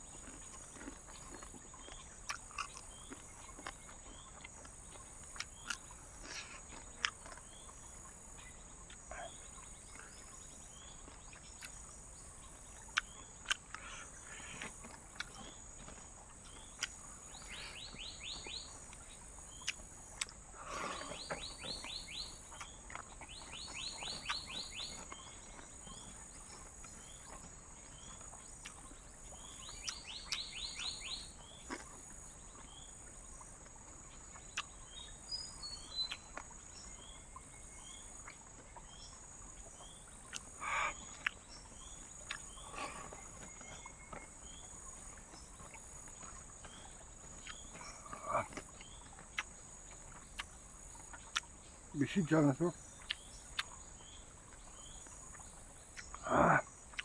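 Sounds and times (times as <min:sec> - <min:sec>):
animal pulsed calls: 0:40.3 - 0:41.4.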